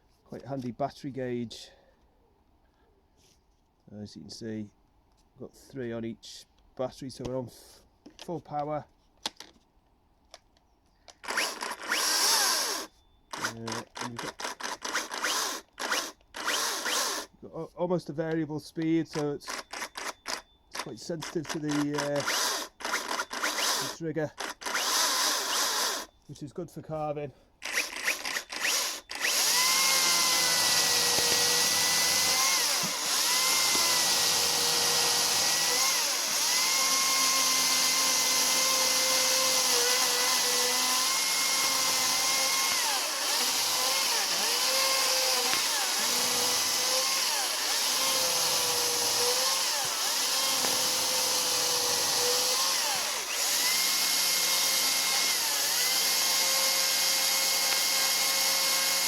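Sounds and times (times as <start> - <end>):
electric chainsaw cutting wood: 11.2 - 17.3, 21.5 - 26.1, 27.6 - 59.0.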